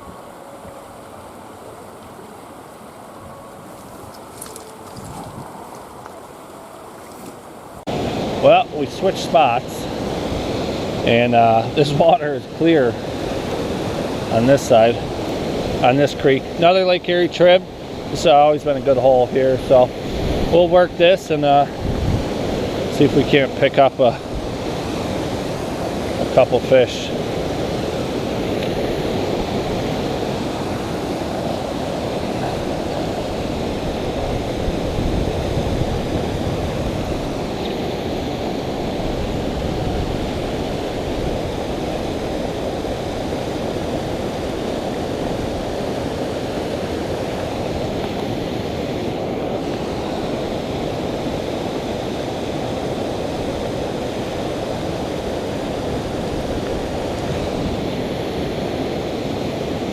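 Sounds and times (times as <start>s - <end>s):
flowing creek rushing: 0.0s - 59.9s
wind buffeting microphone: 3.1s - 8.5s, 17.6s - 26.4s, 27.1s - 59.9s.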